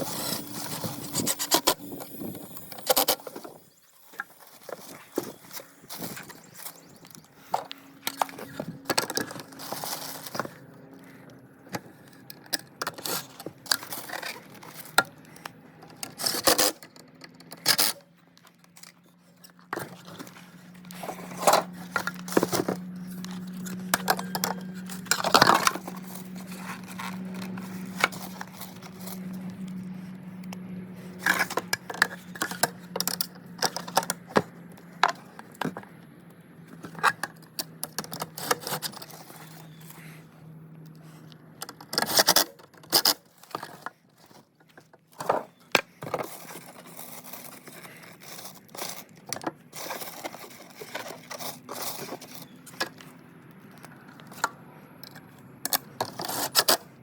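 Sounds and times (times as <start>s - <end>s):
metal parts and tools clinking: 18.7s - 29.6s.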